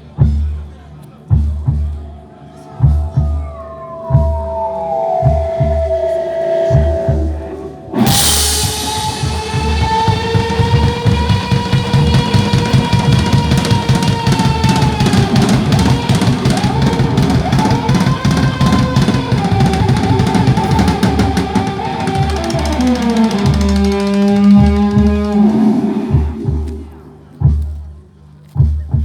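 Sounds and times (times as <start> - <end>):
sustained electric guitar notes: 3.1 - 26.4
fast dense drumming: 8.0 - 26.7.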